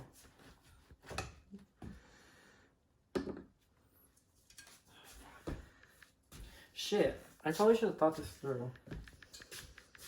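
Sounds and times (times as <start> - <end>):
kitchen knocks and clatters: 1.0 - 1.6, 3.1 - 3.6.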